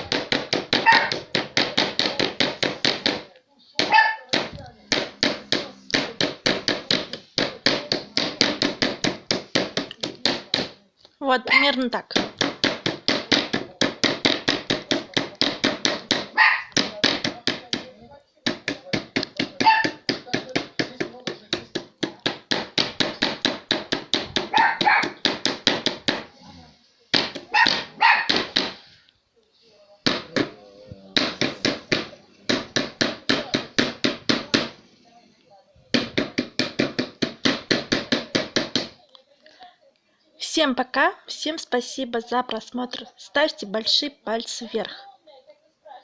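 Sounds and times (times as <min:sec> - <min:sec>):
rapid even knocking: 0:00.0 - 0:10.8, 0:12.1 - 0:17.9, 0:18.5 - 0:26.3, 0:27.2 - 0:28.8, 0:30.0 - 0:34.8, 0:35.9 - 0:39.0
small dog barking: 0:00.8 - 0:01.1, 0:03.9 - 0:04.3, 0:16.4 - 0:16.7, 0:19.6 - 0:20.0, 0:24.5 - 0:25.2, 0:27.5 - 0:28.3.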